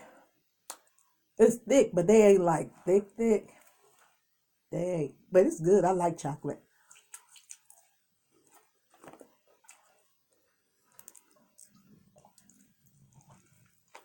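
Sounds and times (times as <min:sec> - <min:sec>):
faint low hum: 0:00.0 - 0:14.0
person chewing with mouth clicks: 0:06.8 - 0:14.0.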